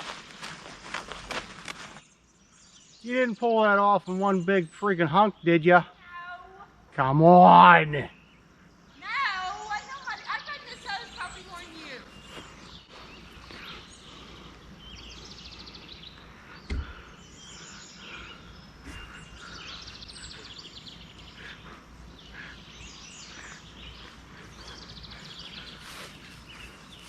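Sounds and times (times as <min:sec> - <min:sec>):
birds chirping and singing: 0:00.2 - 0:27.0
dull thump: 0:16.7 - 0:17.0.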